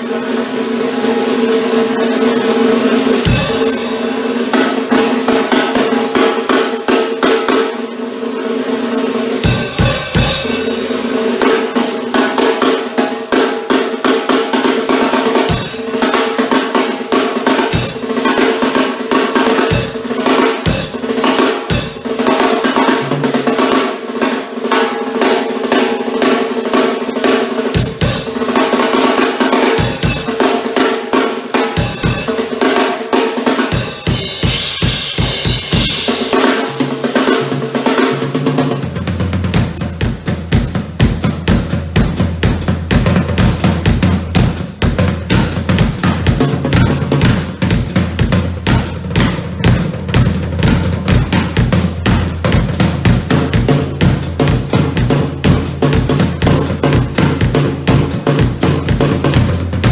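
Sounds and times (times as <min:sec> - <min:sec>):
drum kit groove: 0:00.0 - 0:59.9
cymbal crashes: 0:03.0 - 0:05.8, 0:09.4 - 0:11.8, 0:33.7 - 0:37.0.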